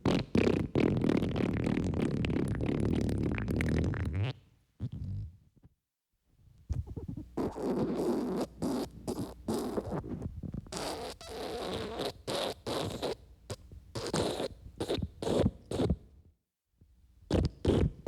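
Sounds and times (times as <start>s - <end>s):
wet farts: 0.0s - 5.3s.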